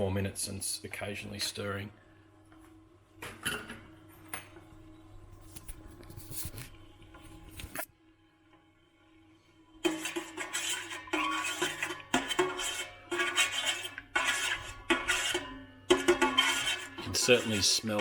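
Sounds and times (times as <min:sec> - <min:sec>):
music: 0:01.4 - 0:13.6, 0:15.0 - 0:18.0
utensil scraping saucepan: 0:09.8 - 0:18.0.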